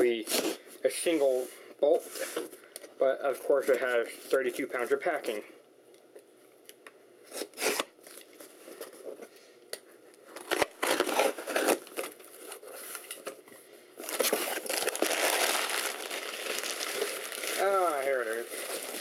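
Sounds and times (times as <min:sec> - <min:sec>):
packing material crinkling: 0:10.3 - 0:13.3, 0:14.0 - 0:19.0.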